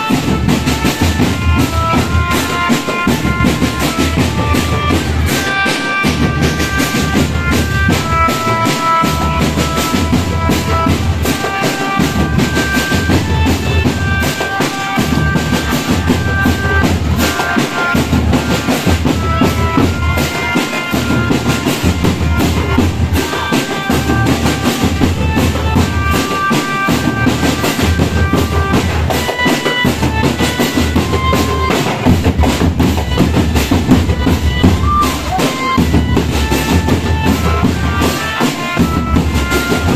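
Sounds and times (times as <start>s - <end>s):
bass and snare drums beating: 0.0s - 39.9s
melody of high held notes: 0.2s - 39.9s.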